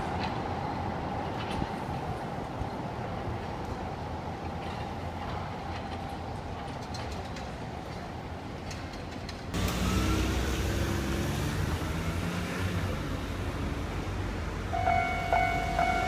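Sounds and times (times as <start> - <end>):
road vehicles passing: 9.5 - 16.0
level crossing warning bell: 14.7 - 16.0.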